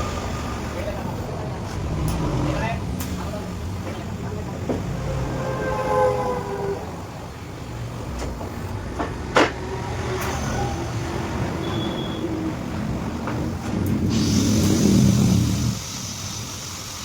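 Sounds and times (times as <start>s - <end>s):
low mechanical rumble: 0.0s - 8.2s.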